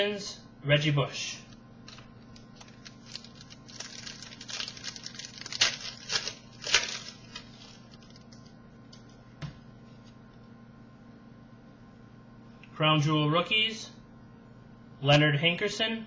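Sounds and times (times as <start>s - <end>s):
wrapper crinkling and rustling: 1.8s - 8.5s.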